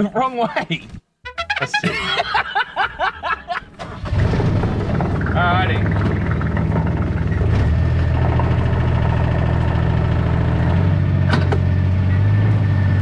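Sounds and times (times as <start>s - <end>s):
vehicle engine running at low revs: 4.0s - 13.0s.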